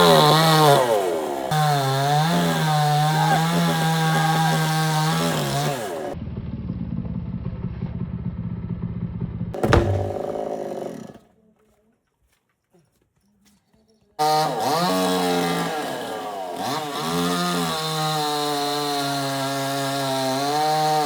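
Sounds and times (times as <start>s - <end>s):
chainsaw cutting wood: 0.0s - 6.2s, 9.6s - 11.2s, 14.2s - 21.0s.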